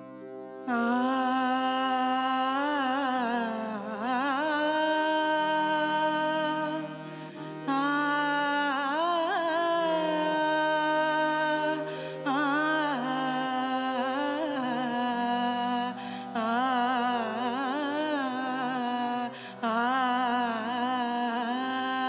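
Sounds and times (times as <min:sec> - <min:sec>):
woman singing: 0:00.6 - 0:22.0
woman breathing: 0:11.9 - 0:12.2, 0:16.0 - 0:16.2.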